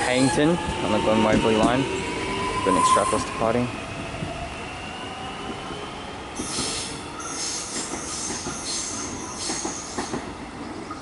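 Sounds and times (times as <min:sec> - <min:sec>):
train wheels squealing: 0:00.0 - 0:03.4, 0:06.4 - 0:10.2
wheels rushing on rail: 0:00.0 - 0:11.0.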